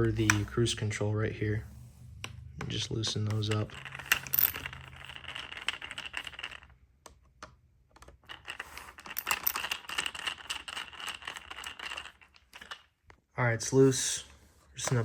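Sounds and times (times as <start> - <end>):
screwdriver clicking and rattling: 8.0 - 12.9.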